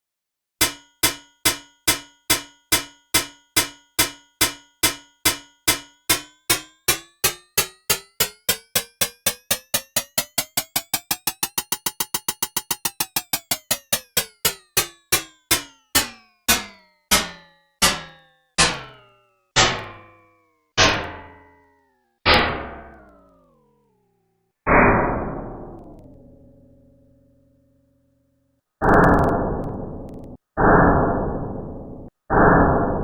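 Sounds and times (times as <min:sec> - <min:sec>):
synthesized metallic ringing hits: 0:00.6 - 0:20.2.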